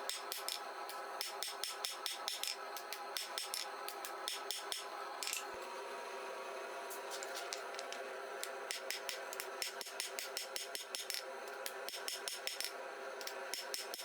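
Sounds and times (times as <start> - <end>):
hammer striking steel on anvil: 1.2 - 5.5.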